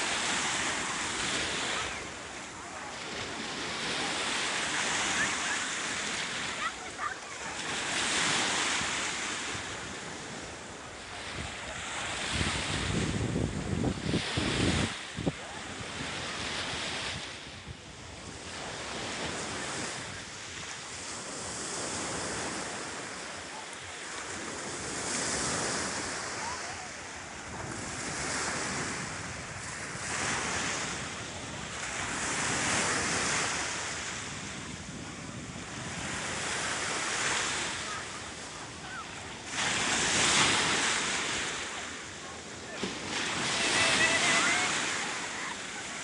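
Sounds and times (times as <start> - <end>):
sea waves washing in: 0.0 - 46.0
wind buffeting microphone: 7.6 - 22.6, 27.2 - 41.3.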